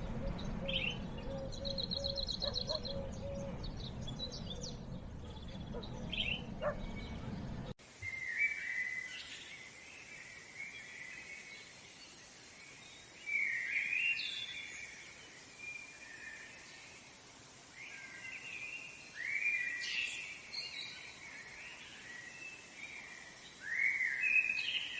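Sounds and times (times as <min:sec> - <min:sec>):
steady background noise: 0:00.0 - 0:07.8
birds chirping and trilling: 0:00.0 - 0:09.7.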